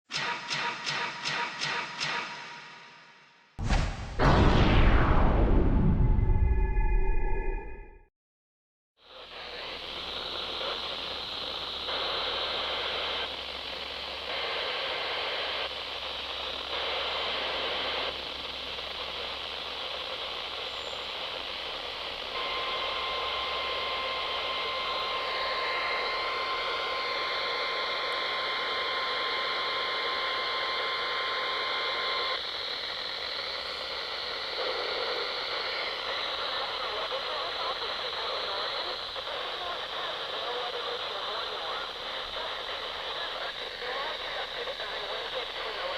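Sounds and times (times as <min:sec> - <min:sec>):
radio static: 0:09.2 - 0:45.9
steady warning alarm tone: 0:22.3 - 0:32.4.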